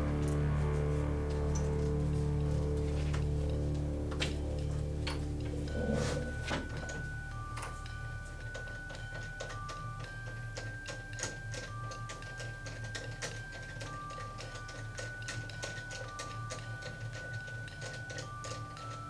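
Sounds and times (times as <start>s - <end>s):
steady low hum: 0.0s - 10.8s
simple melody over ticking beat: 6.7s - 19.0s.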